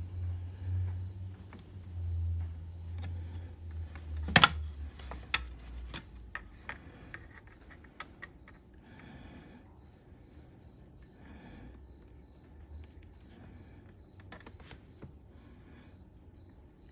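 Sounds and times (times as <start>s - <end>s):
parts and tools clicking: 2.9s - 9.1s.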